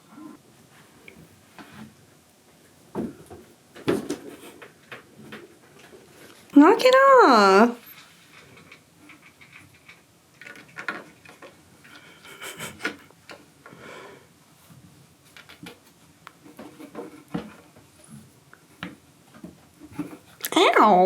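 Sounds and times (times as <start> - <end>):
kittens scratching and chewing: 3.4 - 6.5, 7.8 - 13.8, 14.4 - 20.6.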